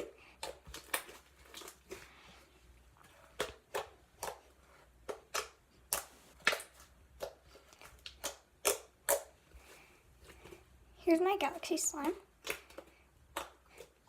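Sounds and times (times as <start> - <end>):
slime squished by hand: 3.0 - 9.4.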